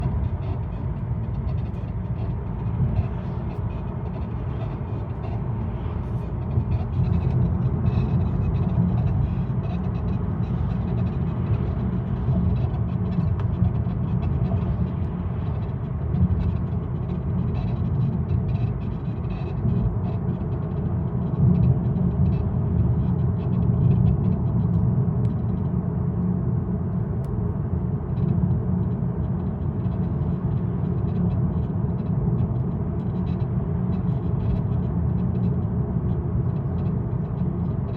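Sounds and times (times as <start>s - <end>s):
car engine and road rumble: 0.0s - 37.9s.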